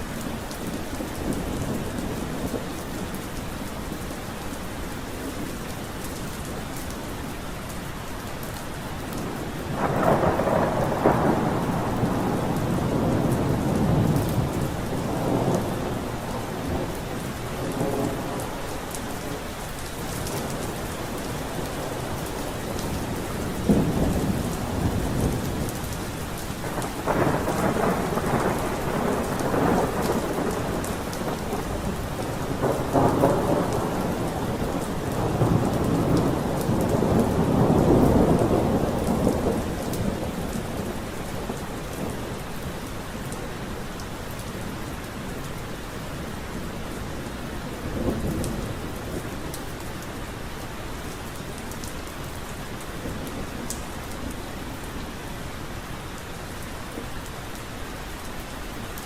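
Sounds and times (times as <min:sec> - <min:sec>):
heavy rain: 0:00.0 - 0:59.0
thunder rumbling: 0:09.2 - 0:19.4, 0:20.0 - 0:44.8.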